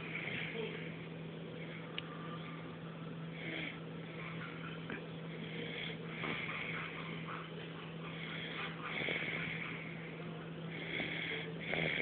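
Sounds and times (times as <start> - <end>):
steady low hum: 0.0 - 12.0
person snoring: 10.7 - 12.0.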